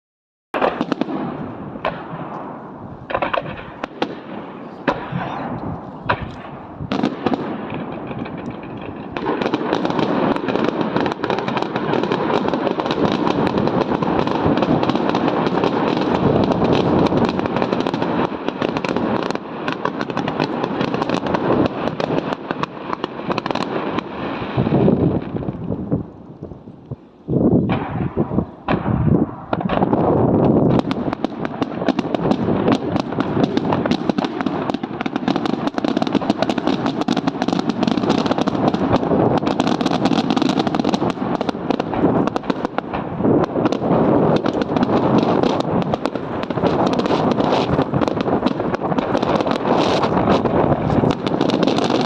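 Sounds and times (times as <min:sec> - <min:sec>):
fireworks bangs and crackles: 0:00.6 - 0:52.0.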